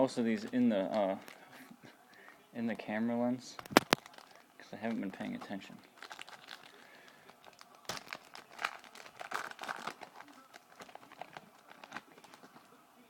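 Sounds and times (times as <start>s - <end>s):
wrapper crinkling and tearing: 3.6s - 12.7s.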